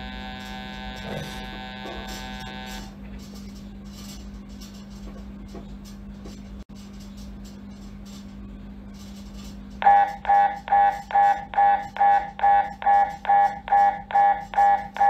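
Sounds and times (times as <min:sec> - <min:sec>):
mri scanner tonal beeps: 0:00.0 - 0:03.0, 0:09.8 - 0:15.0
mri scanner low hum: 0:00.0 - 0:15.0.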